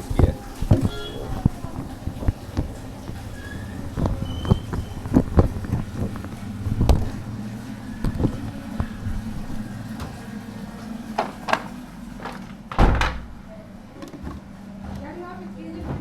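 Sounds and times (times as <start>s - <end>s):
low steady rumble: 0.0s - 15.5s
hand tools knocking and clicking: 11.2s - 13.3s.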